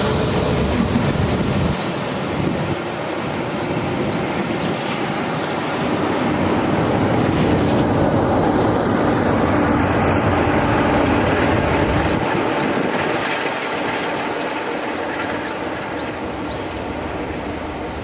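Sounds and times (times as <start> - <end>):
train wheels rumbling on rail: 0.0 - 18.0.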